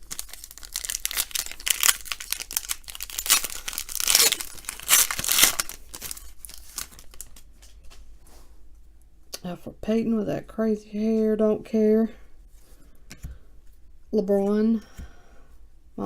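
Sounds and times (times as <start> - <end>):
card pack wrapper tearing and crinkling: 0.0 - 7.7.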